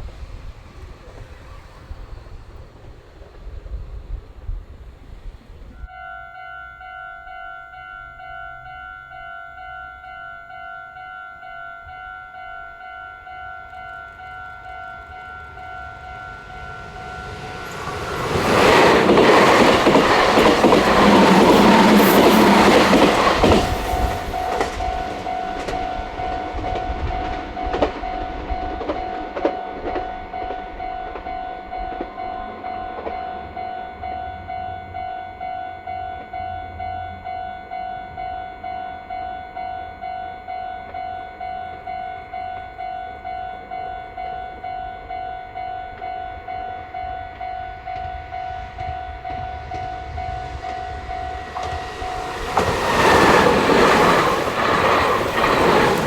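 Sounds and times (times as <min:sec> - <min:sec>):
electric train passing: 0:00.0 - 0:56.0
crossing warning bell ringing: 0:05.8 - 0:56.0
wheels clicking over rail joints: 0:12.5 - 0:34.9, 0:47.0 - 0:56.0.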